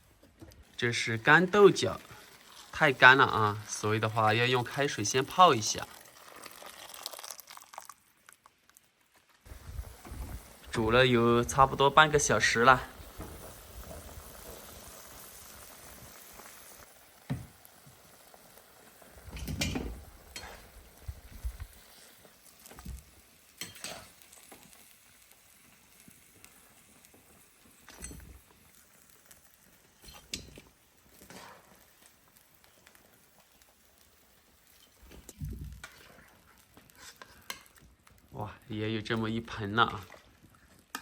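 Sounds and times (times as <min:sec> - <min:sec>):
faint steady hiss: 0:00.0 - 0:41.0
pots and utensils clinking: 0:19.2 - 0:20.8, 0:23.6 - 0:24.6, 0:27.9 - 0:28.5, 0:30.0 - 0:31.8, 0:34.6 - 0:37.8.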